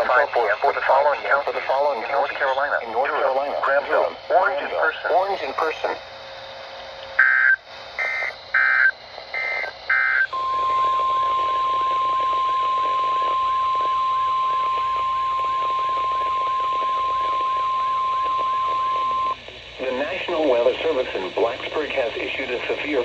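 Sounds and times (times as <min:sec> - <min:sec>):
faint radio hiss: 0:00.0 - 0:06.0, 0:10.4 - 0:23.0
warbling digital data bursts: 0:07.2 - 0:23.0.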